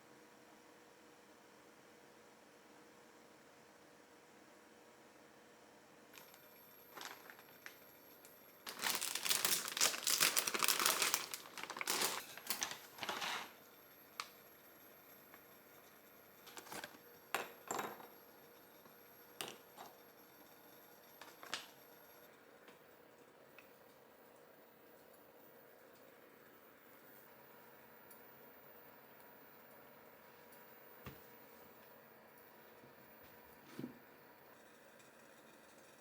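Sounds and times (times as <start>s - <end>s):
wrapper crinkling: 6.9s - 7.8s, 8.6s - 13.3s.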